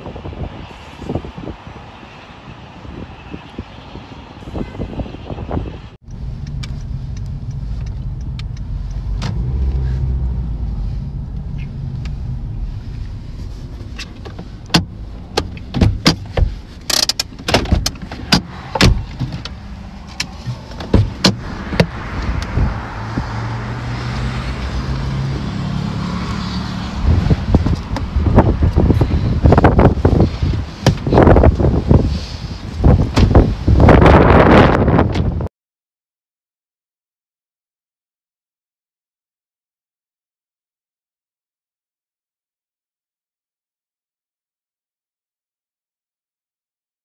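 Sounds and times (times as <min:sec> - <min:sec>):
wind noise: 0:00.0 - 0:35.5
vehicle engine humming: 0:00.6 - 0:33.9
sharp knocks and pops: 0:14.2 - 0:19.6, 0:20.2 - 0:22.0, 0:30.8 - 0:31.2.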